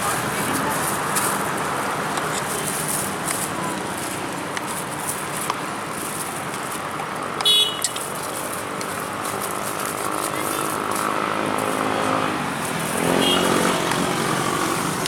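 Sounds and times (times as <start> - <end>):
road traffic: 0.0 - 15.0
vehicle horn toot: 7.4 - 8.0, 13.1 - 13.8.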